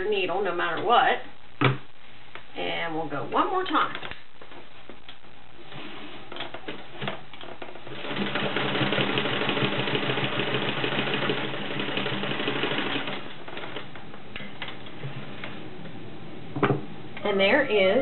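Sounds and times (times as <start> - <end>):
sewing machine stitching: 7.8 - 13.9.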